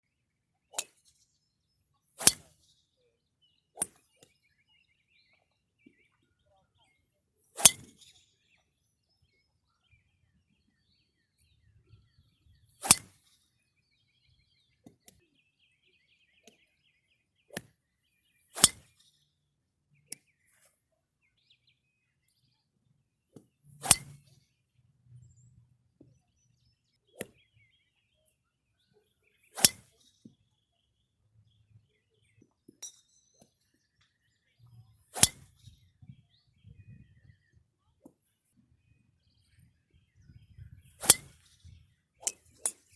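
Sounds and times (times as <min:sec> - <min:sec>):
faint bird chirps: 0:00.0 - 0:23.0, 0:23.6 - 0:42.1
golf club striking ball: 0:02.2 - 0:02.5, 0:07.6 - 0:07.9, 0:12.8 - 0:13.1, 0:18.6 - 0:18.9, 0:23.8 - 0:24.2, 0:29.6 - 0:30.0, 0:35.1 - 0:35.5, 0:41.0 - 0:41.4.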